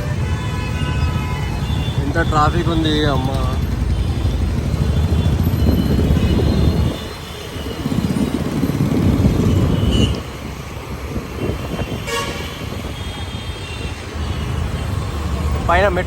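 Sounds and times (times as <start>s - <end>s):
road traffic rumble: 0.0s - 16.0s
vehicle horn toot: 9.4s - 10.3s, 11.4s - 14.9s.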